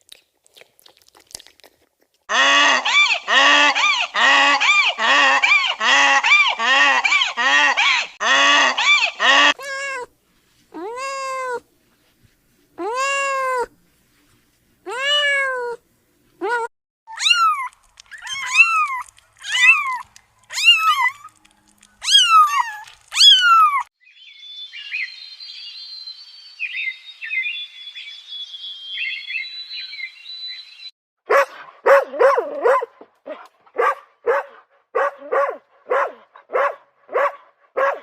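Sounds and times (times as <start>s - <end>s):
cat meowing: 9.5s - 10.1s, 10.8s - 11.6s, 14.9s - 15.8s, 17.1s - 23.9s
small dog barking: 31.3s - 38.0s.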